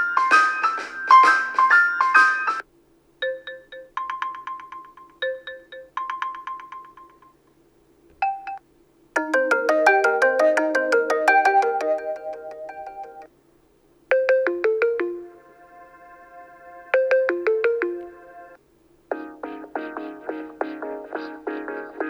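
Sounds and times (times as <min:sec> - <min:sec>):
ringtone melody: 0:00.0 - 0:02.6, 0:03.2 - 0:07.4, 0:08.2 - 0:08.6, 0:09.2 - 0:13.3, 0:14.1 - 0:22.0
two-note chime: 0:09.2 - 0:13.3.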